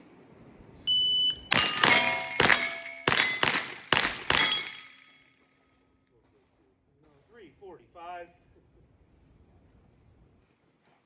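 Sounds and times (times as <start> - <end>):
shot timer beep: 0.9 - 3.6
steel targets ringing: 1.4 - 5.5
gunshots: 1.5 - 5.2.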